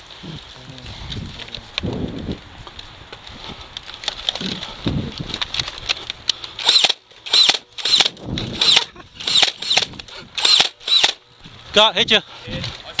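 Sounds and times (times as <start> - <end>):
clicking and handling: 2.7 - 11.2
toy blaster motor whirring: 6.6 - 11.2.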